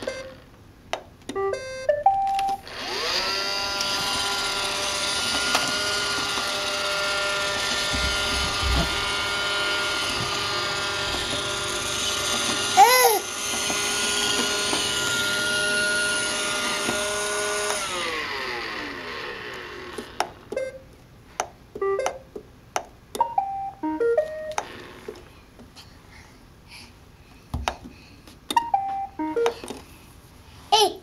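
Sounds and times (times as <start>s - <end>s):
robot vacuum whirring: 2.6s - 20.4s.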